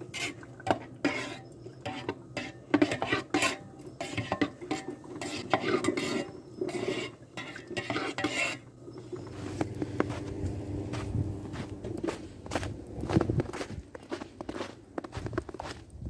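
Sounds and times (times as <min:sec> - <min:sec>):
spoon clinking and scraping dishes: 0:00.2 - 0:10.6.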